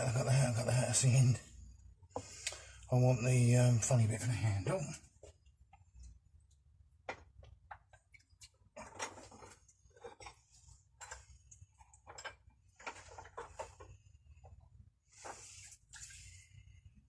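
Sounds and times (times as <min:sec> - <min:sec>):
rummaging through small tool parts: 0:07.1 - 0:14.6.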